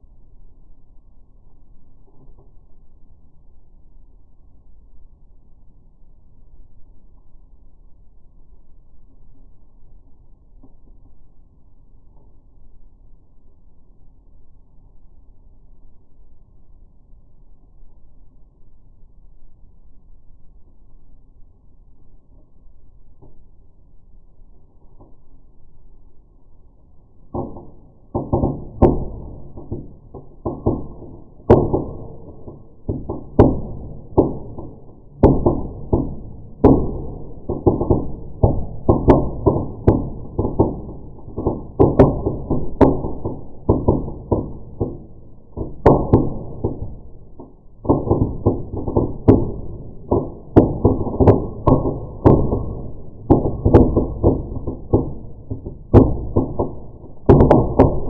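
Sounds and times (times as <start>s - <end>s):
firework crackling with deep pops: 22.2s - 58.0s.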